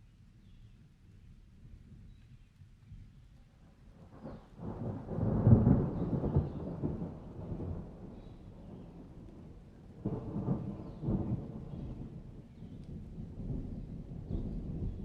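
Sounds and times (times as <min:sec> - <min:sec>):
thunder rumbling: 0:04.2 - 0:15.0.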